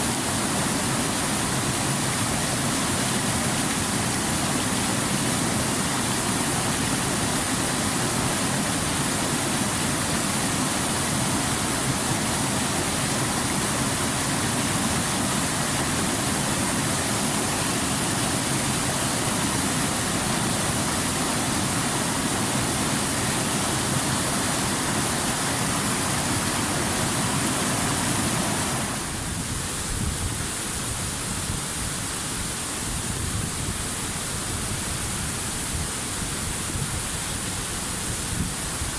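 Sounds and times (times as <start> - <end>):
rushing water: 0.0 - 38.9.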